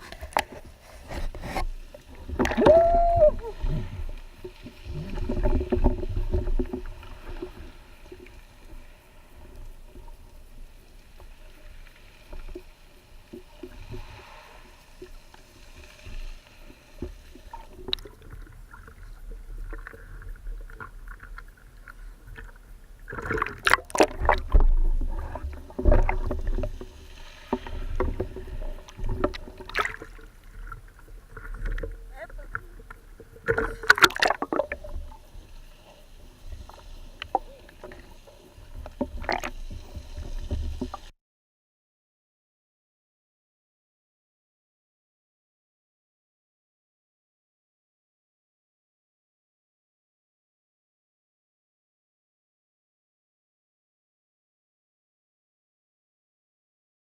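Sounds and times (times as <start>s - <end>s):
underwater rush of water: 0.0s - 41.1s
underwater clicks and knocks: 2.3s - 2.9s, 23.2s - 26.7s, 31.4s - 34.8s, 38.8s - 39.6s.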